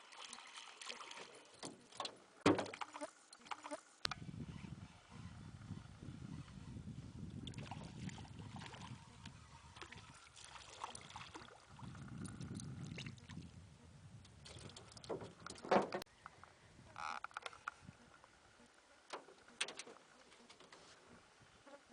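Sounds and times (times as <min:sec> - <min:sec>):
splash or knock: 0:02.4 - 0:03.0
water sloshing around hull: 0:07.4 - 0:13.6.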